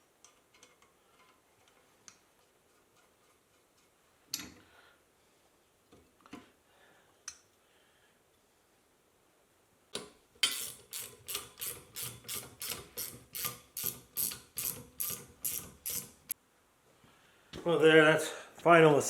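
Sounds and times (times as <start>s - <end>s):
metal ratcheting strokes: 10.4s - 16.4s.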